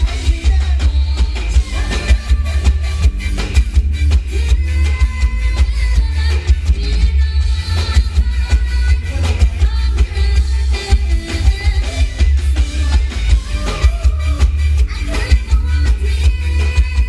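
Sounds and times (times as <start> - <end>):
live pop band music: 0.0 - 17.0
woman singing: 0.0 - 17.0.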